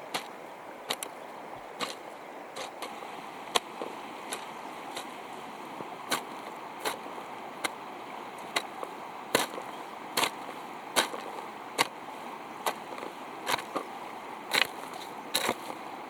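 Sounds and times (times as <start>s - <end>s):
steady background hiss: 0.0s - 16.0s
hand tool striking: 9.4s - 9.6s, 11.0s - 11.9s.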